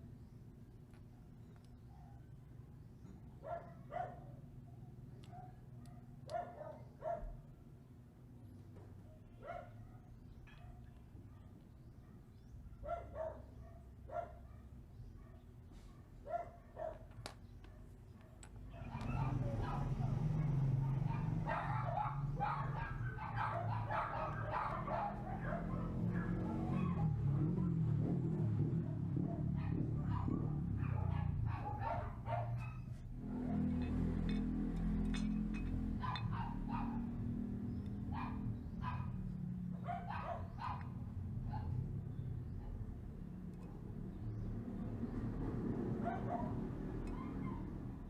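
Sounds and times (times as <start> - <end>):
dog barking and yelping: 3.4 - 4.4, 5.3 - 7.4, 12.8 - 17.1, 17.7 - 34.0, 34.8 - 42.8, 46.0 - 48.0.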